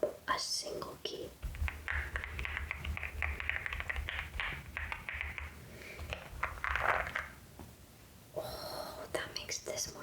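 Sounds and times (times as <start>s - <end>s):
mechanical keyboard typing: 1.4s - 7.3s.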